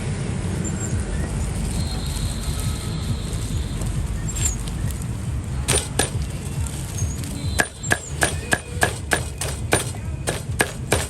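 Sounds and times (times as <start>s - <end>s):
cleaver chopping on block: 7.6s - 11.0s.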